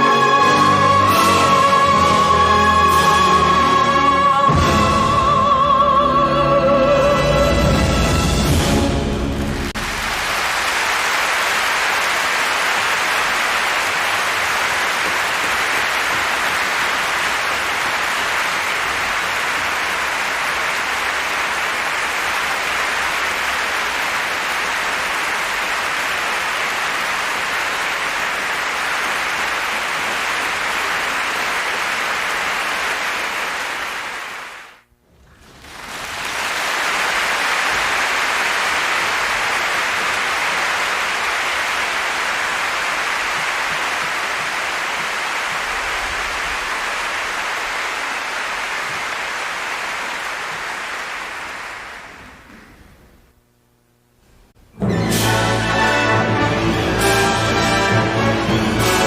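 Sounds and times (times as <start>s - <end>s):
audience applauding: 9.5s - 53.2s, 55.1s - 59.0s.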